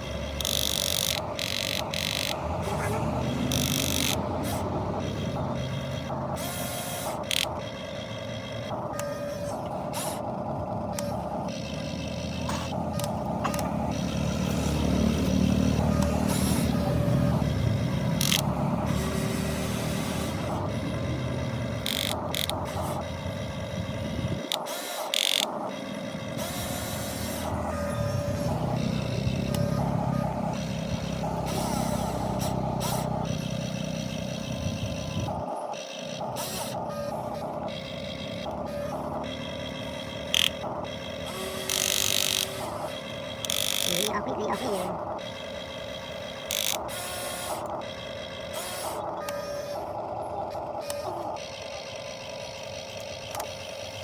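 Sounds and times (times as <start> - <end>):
electric motors whirring: 0.0 - 54.0
steady low hum: 0.0 - 54.0.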